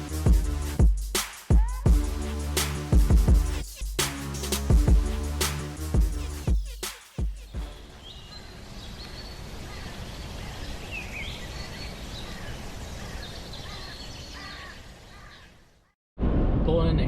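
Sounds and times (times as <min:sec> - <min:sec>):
birds chirping: 0:07.8 - 0:15.8.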